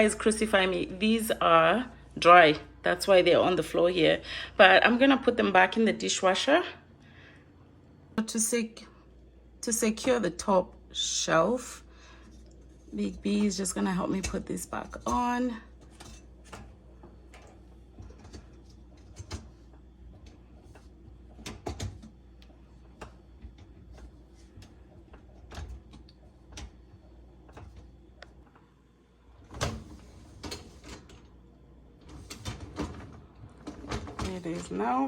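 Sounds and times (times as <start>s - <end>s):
dishwasher rack clicks and knocks: 14.2s - 19.5s, 20.1s - 22.1s, 29.5s - 31.2s, 32.1s - 34.8s.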